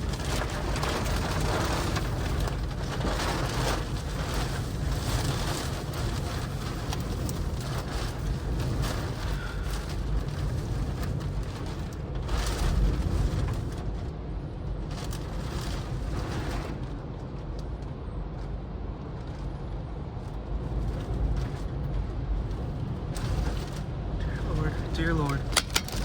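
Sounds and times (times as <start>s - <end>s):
storm wind buffeting microphone: 0.0s - 18.9s.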